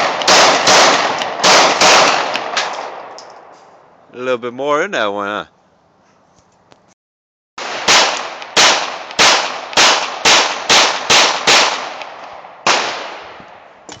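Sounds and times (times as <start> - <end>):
pistol shots: 0.0 - 3.2, 7.6 - 13.4.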